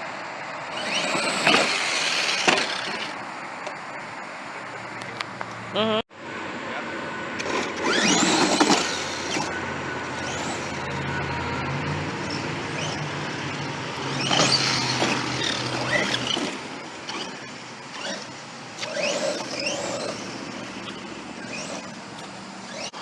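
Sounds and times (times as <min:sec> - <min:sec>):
wind: 0:00.0 - 0:23.0
electric motor whining: 0:00.6 - 0:03.3, 0:07.4 - 0:23.0.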